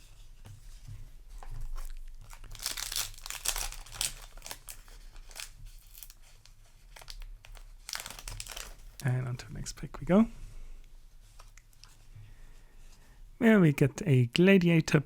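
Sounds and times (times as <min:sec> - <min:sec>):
foil wrapper crinkling and tearing: 0:01.7 - 0:09.1.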